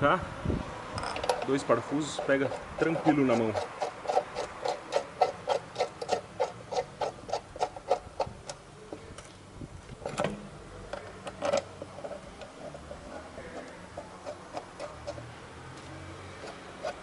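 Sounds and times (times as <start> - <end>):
metal clicks: 1.0 - 1.7
ratchet wrench clicking: 1.0 - 8.6.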